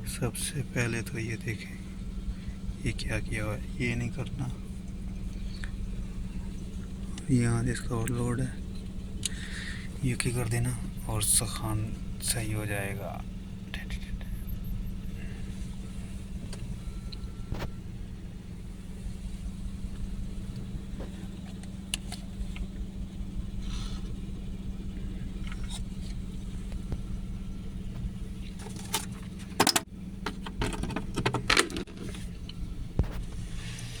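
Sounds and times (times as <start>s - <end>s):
steady low hum: 0.0s - 34.0s
sharp clicks and metallic rattling: 28.4s - 32.6s.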